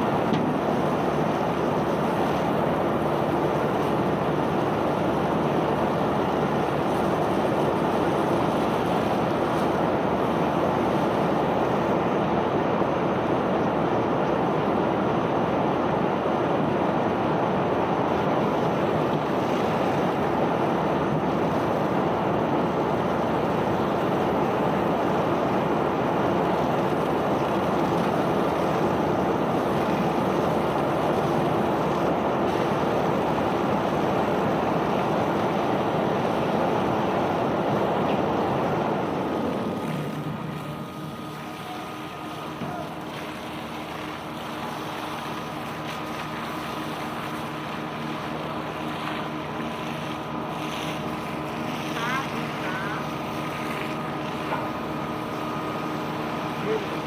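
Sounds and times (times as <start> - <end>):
machinery hum: 0.0 - 57.0
bulk material pouring: 39.2 - 57.0.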